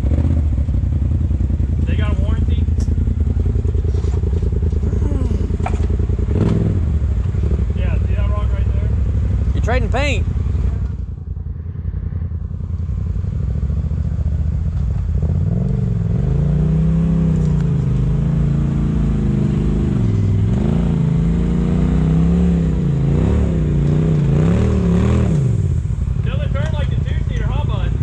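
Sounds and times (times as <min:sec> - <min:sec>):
buggy engine revving: 0:00.0 - 0:11.4, 0:12.5 - 0:28.0.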